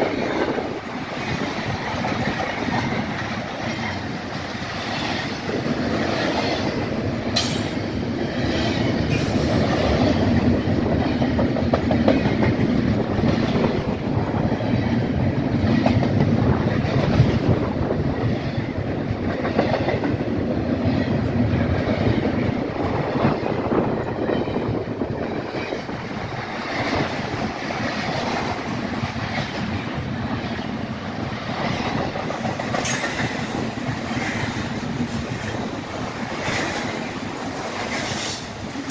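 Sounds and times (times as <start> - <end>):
train wheels clacking on rails: 0.0 - 38.9.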